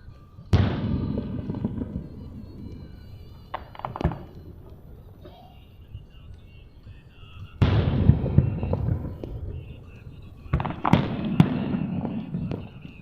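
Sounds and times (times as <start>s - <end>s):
fireworks sharp bangs: 0.0s - 5.8s, 7.5s - 13.0s
fireworks boom: 0.6s - 5.3s, 7.6s - 13.0s.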